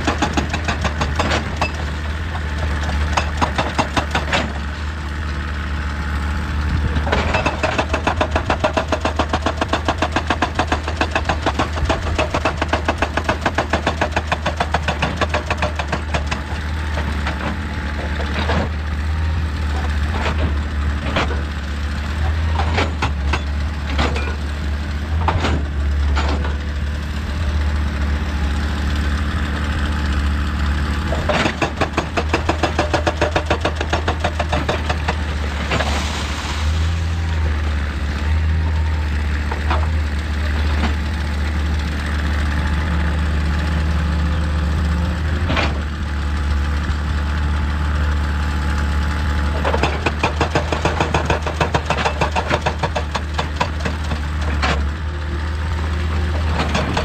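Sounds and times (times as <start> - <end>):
hydraulic breaker hammering rock: 0.0 - 2.0, 2.6 - 4.7, 6.9 - 18.7, 31.0 - 36.0, 49.5 - 54.9, 56.4 - 57.0
excavator diesel engine running: 0.0 - 57.0.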